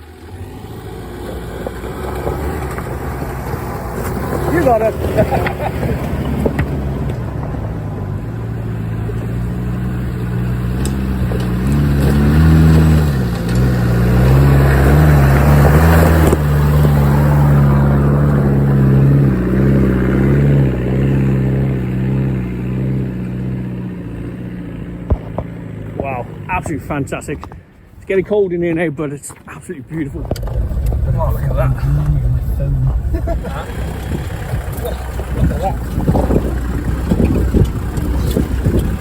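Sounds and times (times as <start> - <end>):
engine pulling under load: 0.0 - 27.8, 29.9 - 39.0
rushing noise: 30.0 - 37.1.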